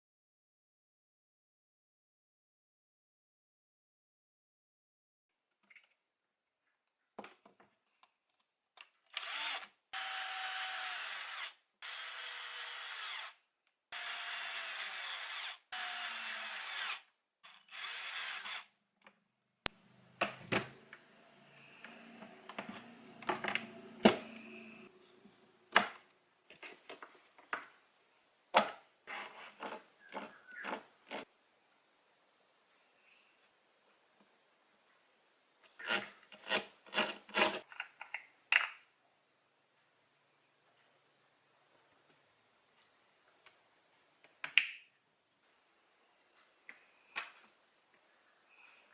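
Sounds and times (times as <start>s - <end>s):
small power tool bursts: 9.2s - 18.7s.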